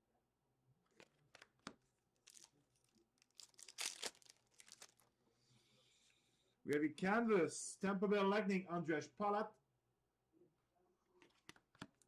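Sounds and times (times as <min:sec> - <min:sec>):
card packs crinkling and rustling: 0:00.9 - 0:05.1.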